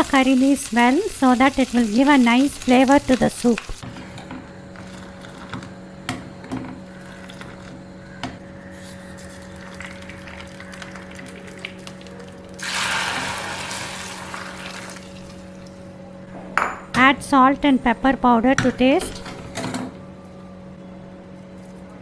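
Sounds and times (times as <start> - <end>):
hot oil hissing: 0.0 - 3.8, 12.6 - 15.4
steady low hum: 0.4 - 22.0.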